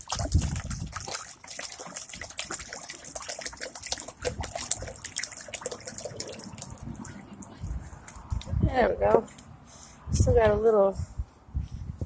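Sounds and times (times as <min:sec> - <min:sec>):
water trickling and splashing: 0:00.0 - 0:08.6.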